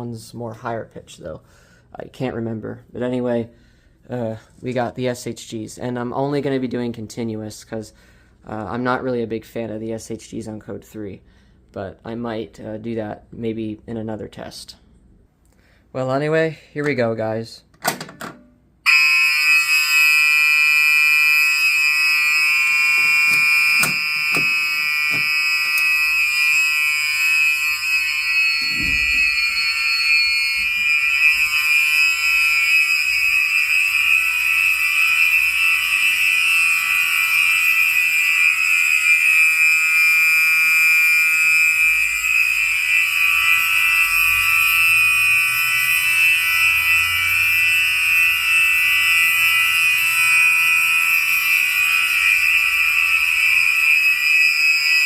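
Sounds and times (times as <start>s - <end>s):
fire alarm horns buzzing: 18.8s - 55.0s.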